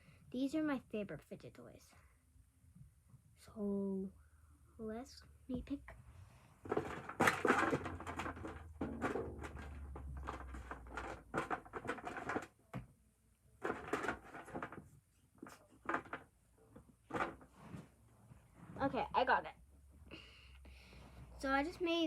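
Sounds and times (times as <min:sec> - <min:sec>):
fidget toys clattering: 0:06.6 - 0:12.6, 0:13.6 - 0:14.9.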